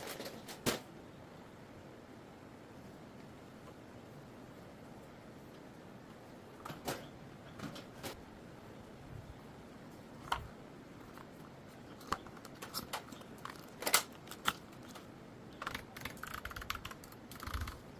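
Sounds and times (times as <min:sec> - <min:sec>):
mechanical keyboard clicks: 0:15.6 - 0:17.8.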